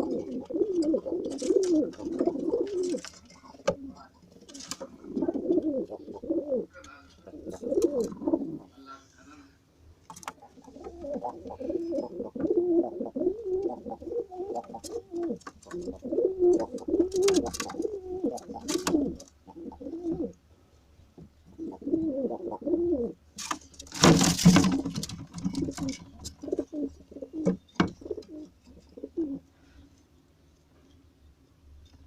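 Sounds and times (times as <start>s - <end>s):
pigeons cooing: 0.0s - 8.8s, 10.3s - 20.4s, 21.5s - 23.2s, 24.5s - 29.5s.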